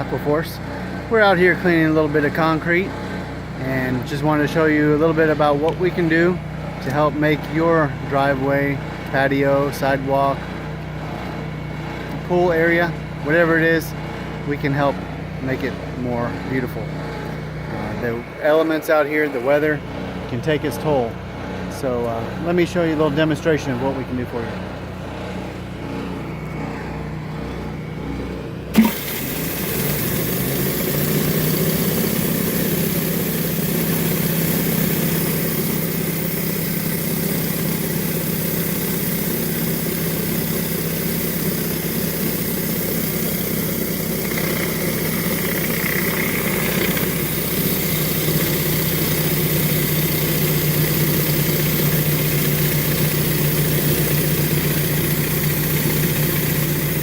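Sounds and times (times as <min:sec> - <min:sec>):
pressure washer engine running: 0:00.0 - 0:57.0
water spray hissing on concrete: 0:28.8 - 0:45.4, 0:47.0 - 0:57.0.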